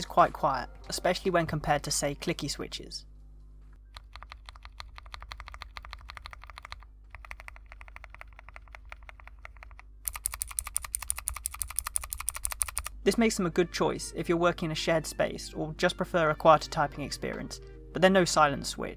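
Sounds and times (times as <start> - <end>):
mechanical keyboard typing: 3.9 - 12.9.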